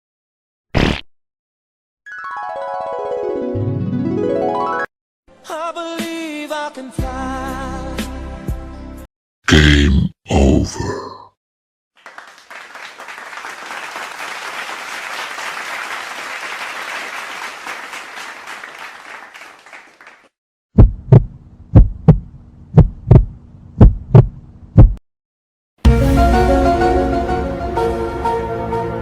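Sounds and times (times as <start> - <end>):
crowd applauding: 12.0 - 20.3
heartbeat thumps: 20.8 - 25.0.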